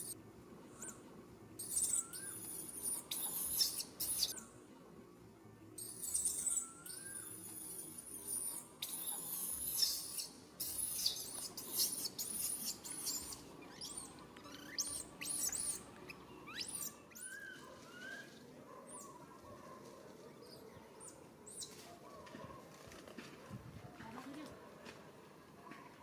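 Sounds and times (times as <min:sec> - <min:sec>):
squeaky animal chirps and squeals: 0:01.6 - 0:04.4, 0:05.8 - 0:18.3.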